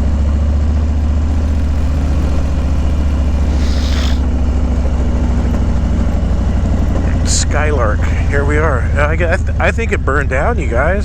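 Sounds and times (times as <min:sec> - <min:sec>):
motorcycle engine running: 0:01.3 - 0:06.8
brief hiss: 0:03.4 - 0:04.2.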